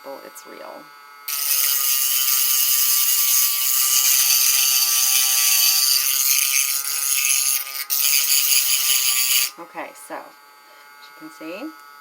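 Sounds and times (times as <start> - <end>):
rotary tool grinding eggshell: 1.3 - 9.7.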